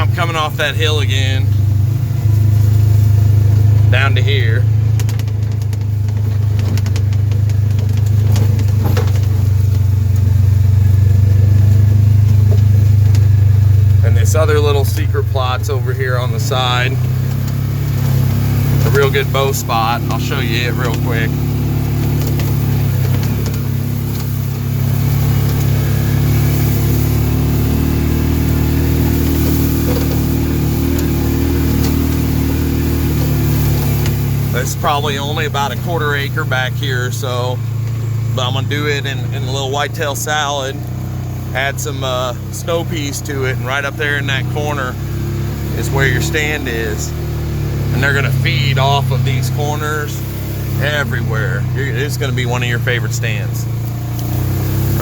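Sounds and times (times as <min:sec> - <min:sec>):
vehicle engine running: 0:00.0 - 0:55.0
rattles and knocks: 0:04.8 - 0:14.0, 0:19.9 - 0:34.5.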